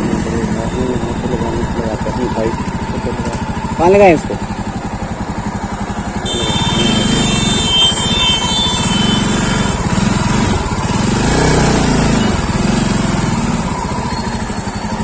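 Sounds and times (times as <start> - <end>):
high-pitched whine: 0.0 - 3.4, 6.2 - 10.7
motorcycle engine running: 0.0 - 15.0.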